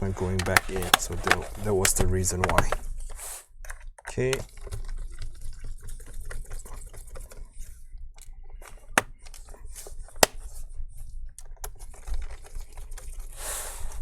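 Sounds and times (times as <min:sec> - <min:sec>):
hands handling laptop case: 0:00.2 - 0:02.8.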